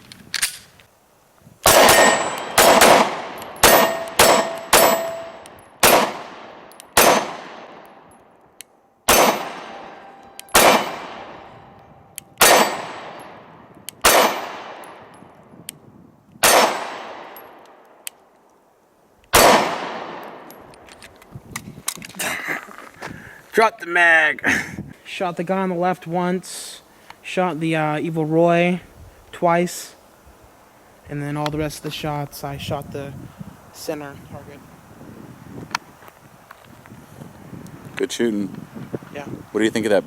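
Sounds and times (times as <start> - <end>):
pistol shots: 1.6 - 7.9, 9.1 - 11.5, 12.3 - 15.1, 16.4 - 17.7, 19.3 - 20.7
steel target clanging: 1.7 - 5.7.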